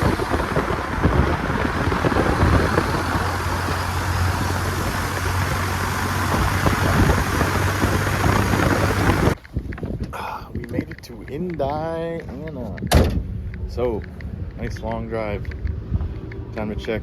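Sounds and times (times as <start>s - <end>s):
vehicle engine drone: 0.0s - 9.4s, 13.1s - 17.0s
road and wind noise: 0.0s - 17.0s.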